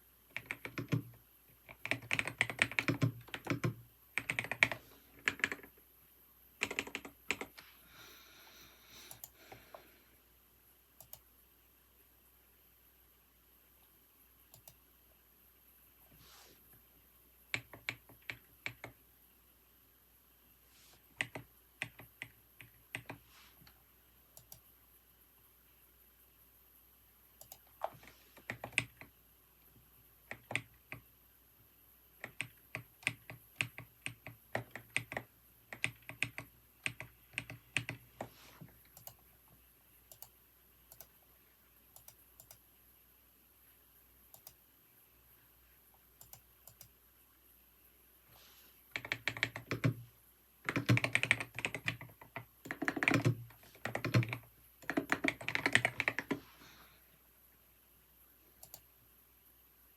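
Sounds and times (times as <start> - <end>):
typing on a computer keyboard: 0.3 - 5.8, 6.6 - 7.6, 11.0 - 11.3, 14.5 - 14.8, 17.5 - 19.0, 21.2 - 23.2, 24.4 - 24.6, 27.4 - 29.1, 30.3 - 31.1, 32.2 - 38.1, 38.9 - 39.2, 40.1 - 41.2, 42.0 - 42.6, 44.3 - 44.6, 46.2 - 46.9, 48.9 - 50.0, 50.6 - 56.4, 58.6 - 58.9.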